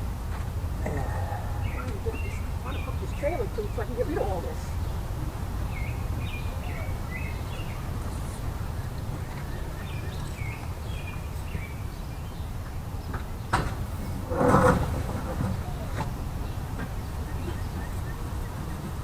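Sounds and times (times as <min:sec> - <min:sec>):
steady low rumble: 0:00.0 - 0:13.1
songbird singing: 0:00.0 - 0:19.0.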